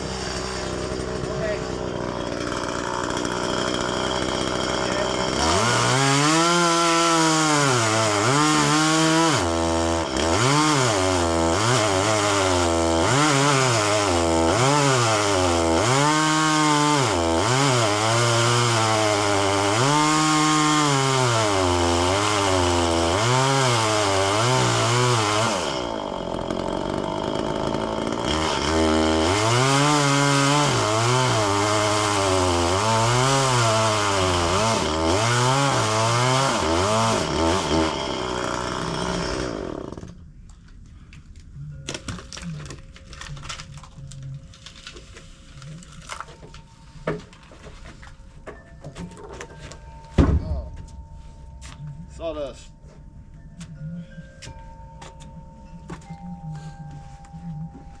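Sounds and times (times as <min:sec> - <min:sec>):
chainsaw cutting wood: 0:00.0 - 0:40.2.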